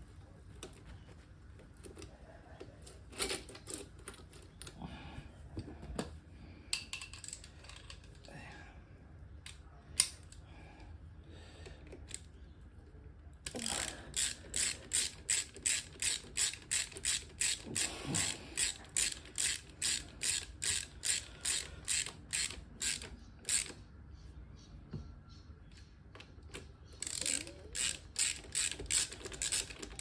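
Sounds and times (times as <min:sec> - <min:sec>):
ratchet wrench clicking: 0:13.5 - 0:23.8, 0:27.0 - 0:30.0.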